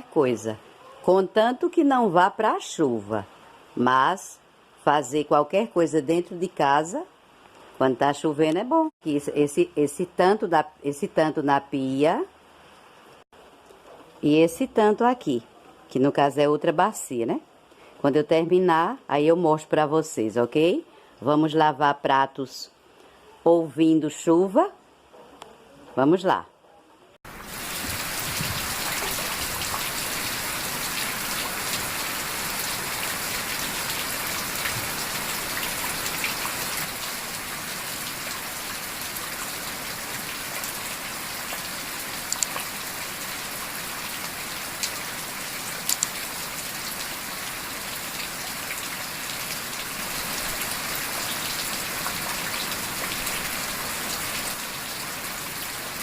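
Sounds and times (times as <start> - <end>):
heavy rain falling: 27.3 - 56.0
sharp clicks: 42.3 - 42.5, 45.9 - 46.1.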